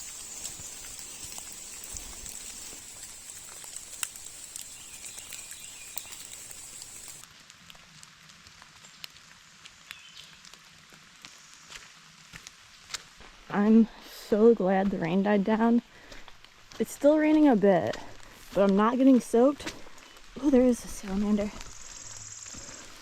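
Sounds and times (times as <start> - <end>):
raindrops ticking on leaves: 0.0 - 13.3
light rain hissing: 0.0 - 14.5, 19.2 - 23.0.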